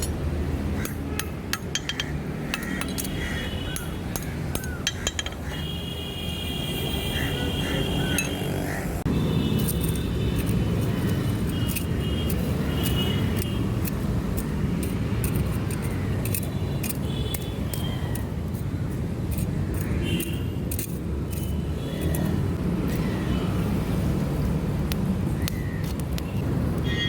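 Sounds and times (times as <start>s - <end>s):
metal pieces clinking: 1.5s - 3.2s, 4.5s - 5.5s.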